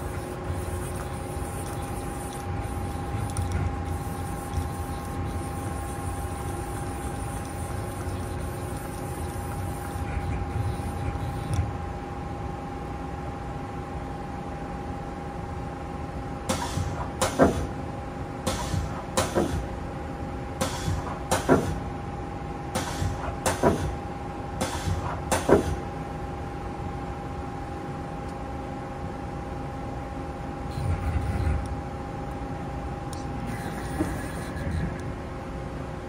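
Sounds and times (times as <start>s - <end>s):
lathe humming with whine: 0.0s - 12.4s.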